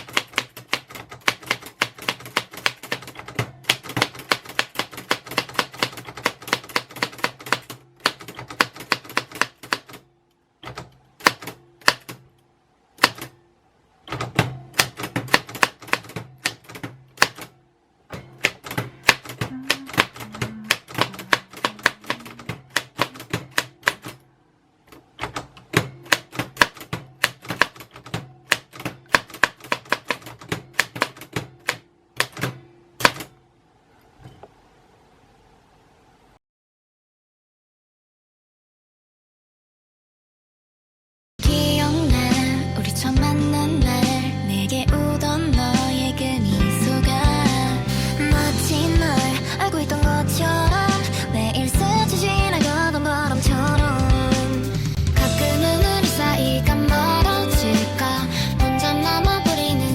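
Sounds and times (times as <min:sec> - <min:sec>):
typewriter keys clacking: 0:00.0 - 0:10.0, 0:14.3 - 0:17.5, 0:18.2 - 0:24.2, 0:25.8 - 0:33.3.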